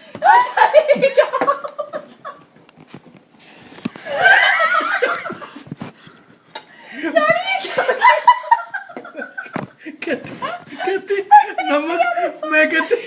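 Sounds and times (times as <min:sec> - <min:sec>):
people laughing: 0:00.0 - 0:02.4, 0:04.0 - 0:05.7, 0:06.8 - 0:13.0.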